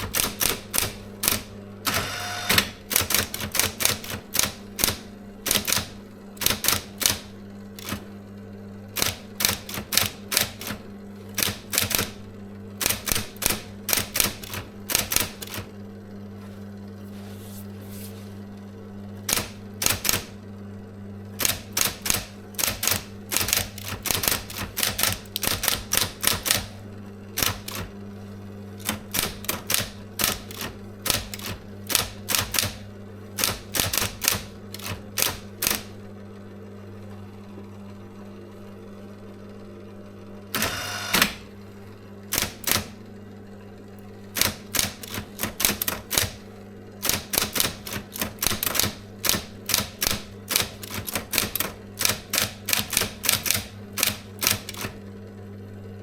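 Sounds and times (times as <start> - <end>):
electric typewriter typing: 0.0 - 8.2, 8.9 - 15.8, 19.2 - 20.4, 21.3 - 36.0, 40.5 - 41.6, 42.3 - 43.1, 44.2 - 55.1.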